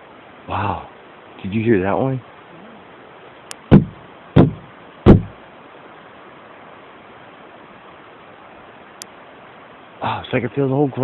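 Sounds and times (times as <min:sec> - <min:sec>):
loud deep pops: 0:03.5 - 0:05.4.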